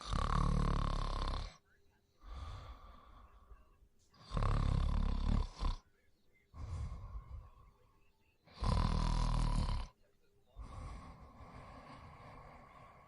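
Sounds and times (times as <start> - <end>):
person snoring: 0.0 - 1.6, 4.2 - 5.8, 8.5 - 9.9, 10.6 - 13.0
soft breath: 1.5 - 4.2, 6.3 - 8.5, 10.5 - 13.0.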